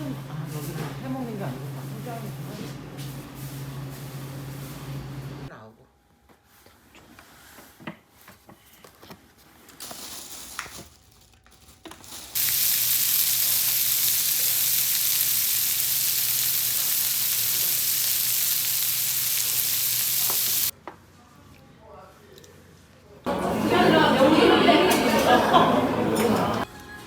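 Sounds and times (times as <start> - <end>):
loud sizzling hiss: 12.3 - 20.7.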